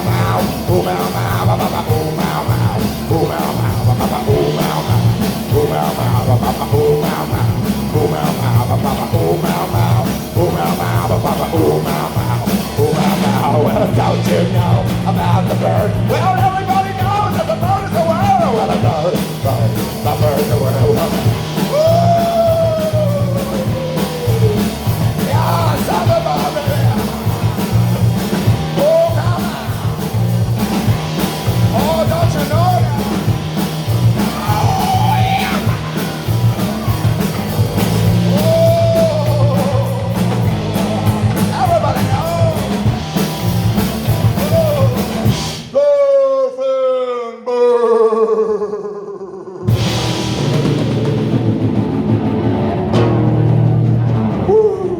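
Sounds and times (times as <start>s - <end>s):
surf rock band playing: 0.0s - 45.7s, 49.7s - 54.9s
singer's wordless vocal whoops: 20.6s - 27.0s, 34.2s - 37.1s, 38.1s - 42.4s, 44.2s - 49.9s, 54.4s - 54.9s.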